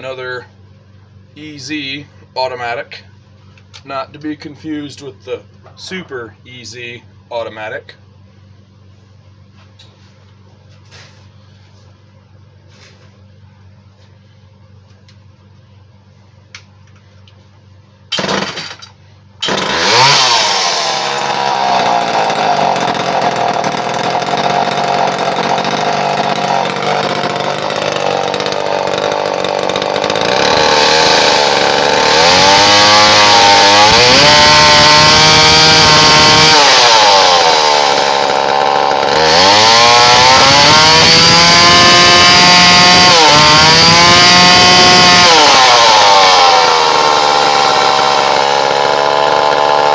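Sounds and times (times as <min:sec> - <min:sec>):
chainsaw starting and revving: 0:18.1 - 0:18.7, 0:19.4 - 0:49.9.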